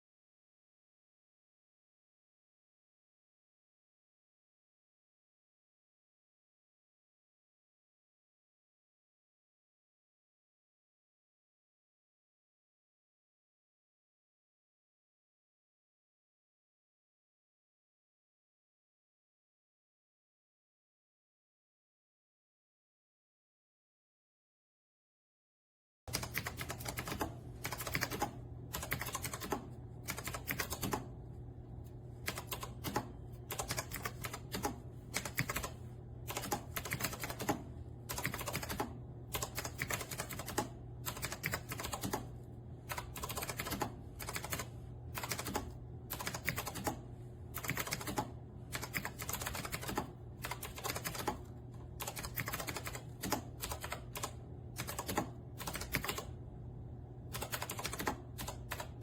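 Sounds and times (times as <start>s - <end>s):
mechanical keyboard typing: 26.1s - 31.1s, 32.2s - 42.3s, 42.9s - 56.4s, 57.3s - 59.0s
steady low hum: 26.2s - 55.6s.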